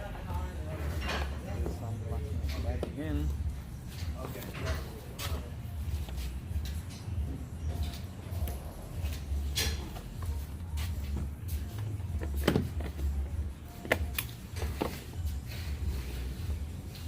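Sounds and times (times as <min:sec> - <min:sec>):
steady low hum: 0:00.0 - 0:17.0
car door parts clicking and knocking: 0:12.2 - 0:13.2.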